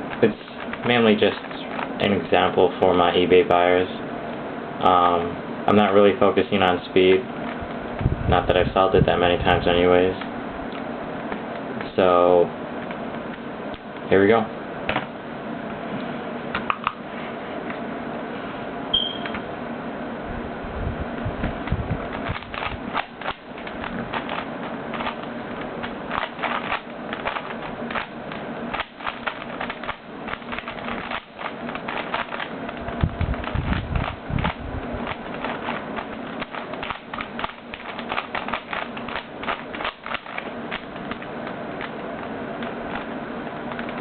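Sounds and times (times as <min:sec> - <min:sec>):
steady hum: 0:00.0 - 0:44.0
puzzle cube clicking: 0:22.1 - 0:43.1.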